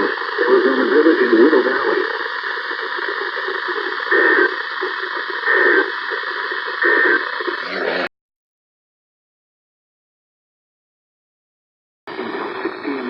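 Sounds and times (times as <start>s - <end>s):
alert data bursts: 0.0s - 8.1s
radio static: 0.0s - 8.1s, 12.1s - 13.0s.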